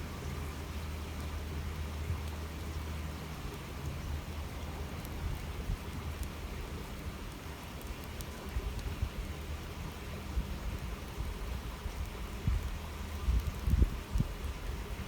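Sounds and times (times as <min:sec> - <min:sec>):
water flowing in a channel: 0:00.0 - 0:15.0
faint high ticks: 0:07.0 - 0:09.0.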